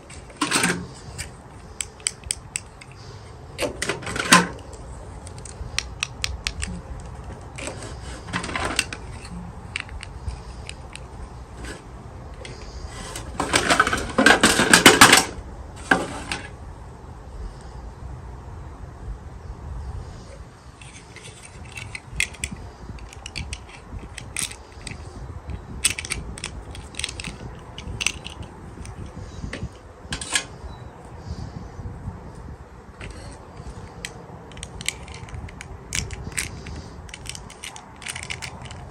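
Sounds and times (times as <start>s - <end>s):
plastic toy pieces clicking: 0.1s - 7.7s, 8.3s - 11.3s, 20.8s - 30.4s, 33.0s - 38.9s.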